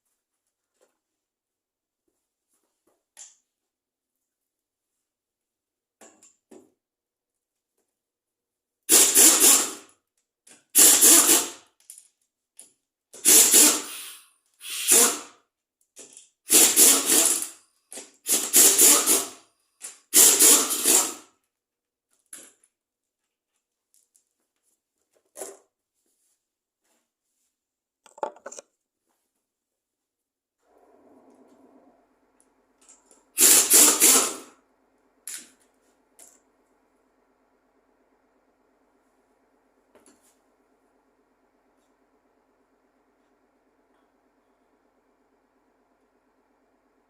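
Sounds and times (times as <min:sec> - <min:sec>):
power tool bursts: 0:08.9 - 0:09.8, 0:10.8 - 0:11.6, 0:13.2 - 0:15.3, 0:16.5 - 0:17.5, 0:18.2 - 0:19.4, 0:20.1 - 0:21.3, 0:33.3 - 0:34.6
faint clicks and knocks: 0:28.0 - 0:28.8.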